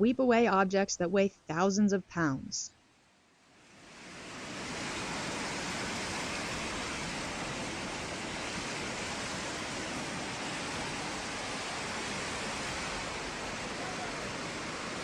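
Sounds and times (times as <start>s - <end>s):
rushing floodwater roar: 3.6s - 15.0s.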